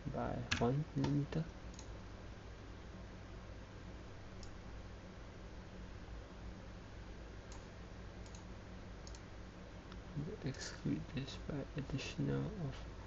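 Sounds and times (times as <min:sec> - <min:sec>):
faint low hum: 0:00.0 - 0:13.0
computer mouse clicking: 0:00.5 - 0:01.9, 0:07.5 - 0:09.2.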